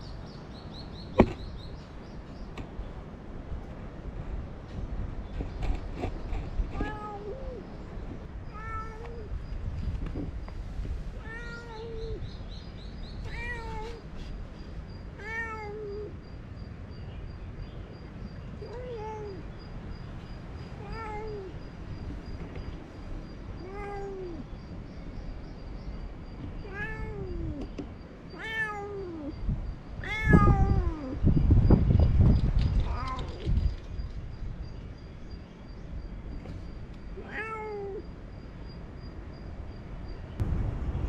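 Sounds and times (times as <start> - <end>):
cat meowing: 6.8 - 7.6, 8.5 - 9.3, 11.2 - 12.2, 13.2 - 14.0, 15.2 - 16.1, 20.8 - 21.6, 23.6 - 24.4, 26.6 - 27.6, 28.3 - 29.3, 30.0 - 31.2, 37.2 - 38.0.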